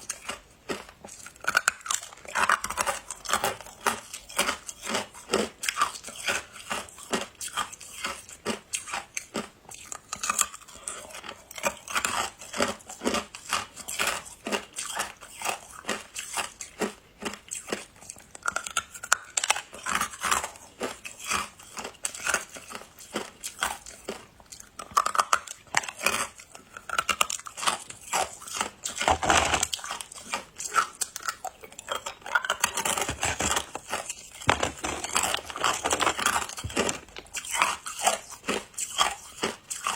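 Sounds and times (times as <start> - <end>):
ice being chewed: 0.0 - 39.9.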